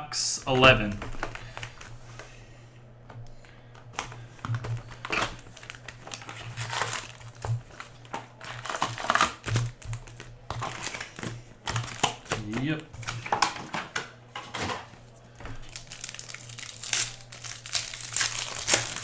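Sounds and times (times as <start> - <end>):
foil wrappers crinkling and tearing: 0.9 - 2.2, 4.0 - 13.7, 15.2 - 19.0.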